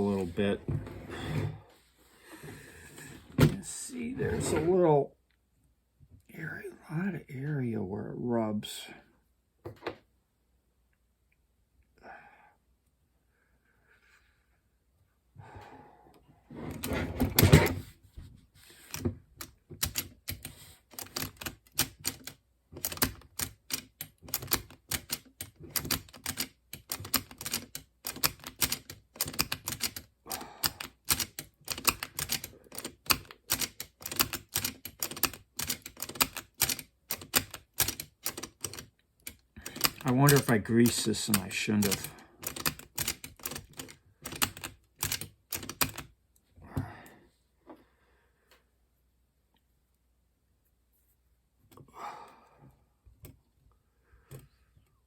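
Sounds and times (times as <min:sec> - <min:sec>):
sharp clicks and scrapes: 0:18.7 - 0:46.0.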